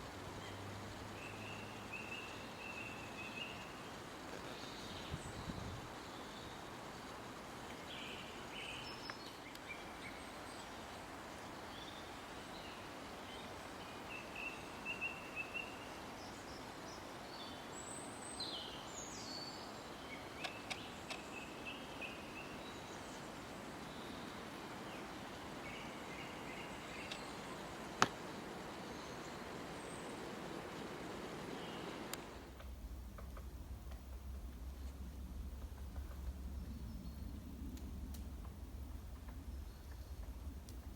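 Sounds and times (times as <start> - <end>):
steady hiss: 0.0 - 40.9
songbirds chirping and calling: 17.4 - 32.4.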